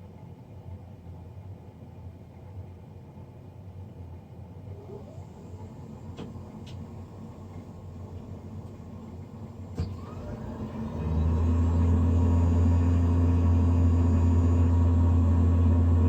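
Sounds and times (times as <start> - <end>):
boiler fan spinning up: 4.6 - 16.0.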